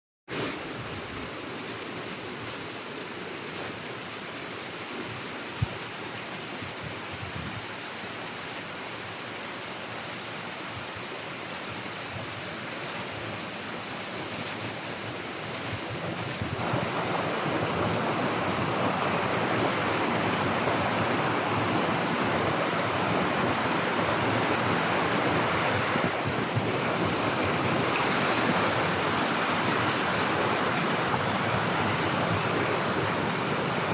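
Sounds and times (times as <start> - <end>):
water rushing: 0.3 - 33.9.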